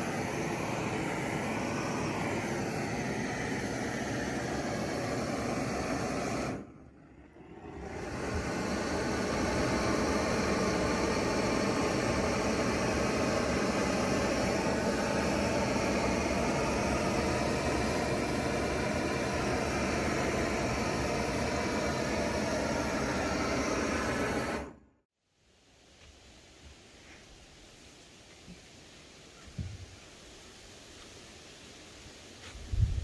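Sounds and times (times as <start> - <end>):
mechanical drone hiss: 0.0 - 24.7.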